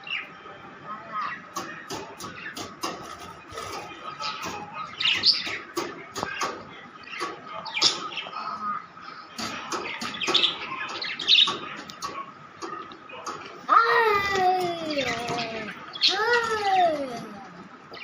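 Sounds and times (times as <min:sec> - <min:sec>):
budgerigars chirping: 0:01.2 - 0:08.3.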